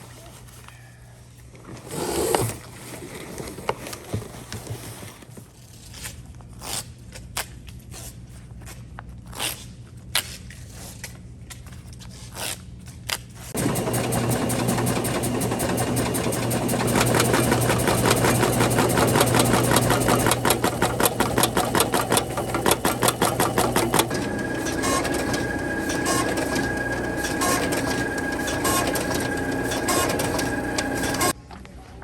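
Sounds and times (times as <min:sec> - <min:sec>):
machine clicks: 0:13.6 - 0:31.4
machine hum with high tone: 0:13.6 - 0:31.4
machinery clatter: 0:13.6 - 0:31.4.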